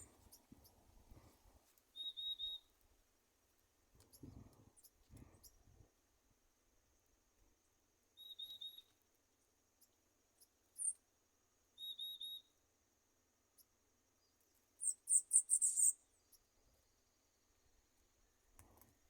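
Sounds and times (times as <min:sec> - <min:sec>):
sharp high bird chirps: 0:02.0 - 0:02.7, 0:08.2 - 0:08.9, 0:11.8 - 0:12.5, 0:14.8 - 0:16.2.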